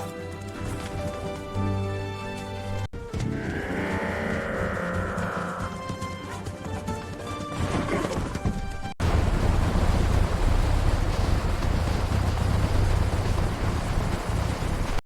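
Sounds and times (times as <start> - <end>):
loud steady rumbling: 9.0 - 15.0.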